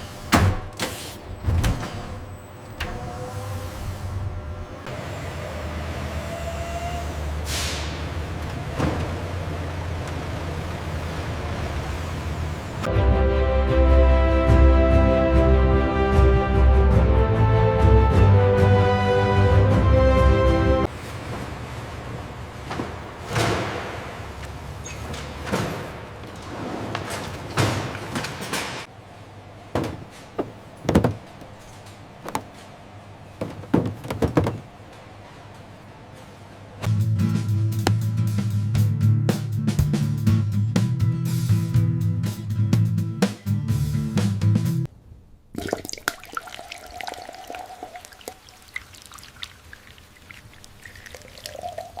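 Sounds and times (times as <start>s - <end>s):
irregular knocks and thuds: 29.8s - 32.6s, 33.4s - 34.8s.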